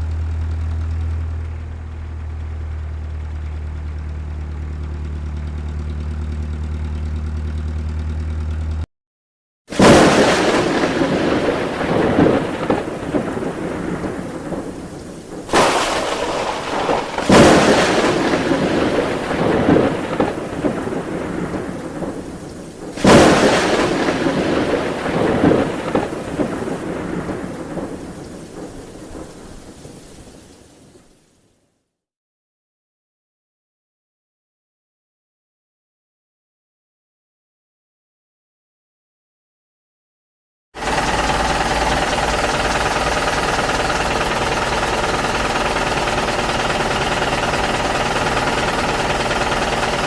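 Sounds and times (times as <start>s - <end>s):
heavy engine idling: 0.0s - 8.8s, 40.8s - 50.0s
loud rumbling crashes: 9.7s - 30.4s.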